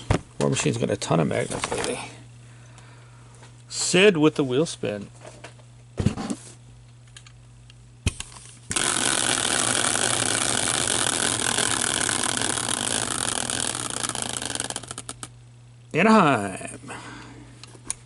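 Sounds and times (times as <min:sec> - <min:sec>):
prize wheel pointer clicking: 0:08.7 - 0:15.3.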